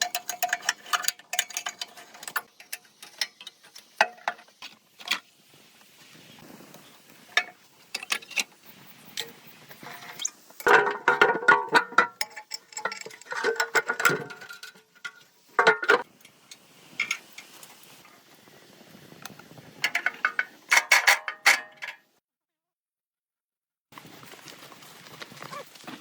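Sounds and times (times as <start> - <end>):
metal tools clinking: 0.0 - 5.2, 9.2 - 16.0, 19.8 - 22.0.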